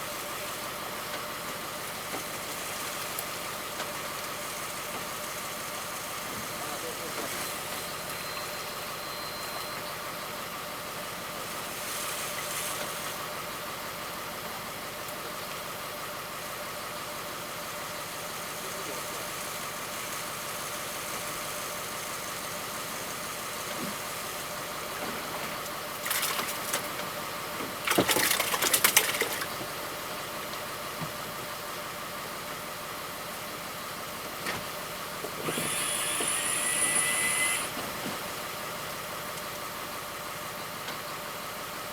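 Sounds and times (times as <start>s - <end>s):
boat engine humming: 0.0s - 41.9s
loud noisy bursts: 35.4s - 37.8s.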